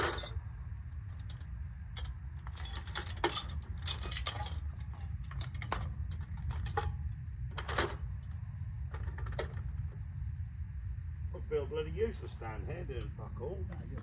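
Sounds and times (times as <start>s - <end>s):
metal tools clinking: 0.0s - 0.4s, 1.1s - 1.4s, 2.0s - 8.4s
steady low hum: 0.0s - 14.0s.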